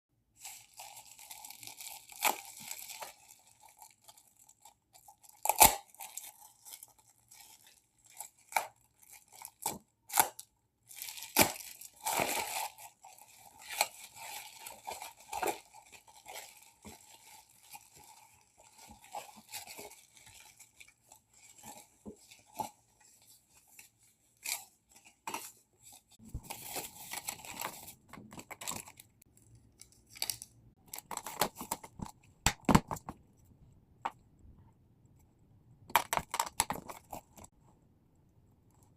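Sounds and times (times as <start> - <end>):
packaging tearing and crinkling: 0.4 - 4.6, 5.2 - 21.0.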